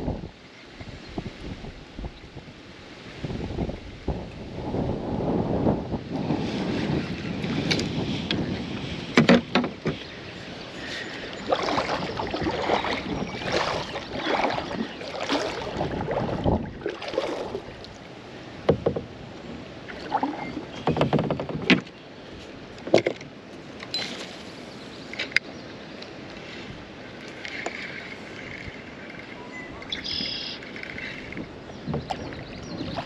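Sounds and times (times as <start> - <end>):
paddle swishing through water: 0.0 - 33.0
sharp knocks: 9.2 - 10.0, 18.7 - 19.1
water dripping and splashing: 10.9 - 18.1.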